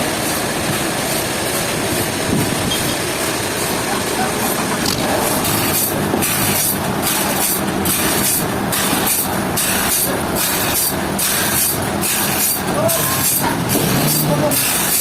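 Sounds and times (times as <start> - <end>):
sawmill saw cutting log: 3.7 - 15.0.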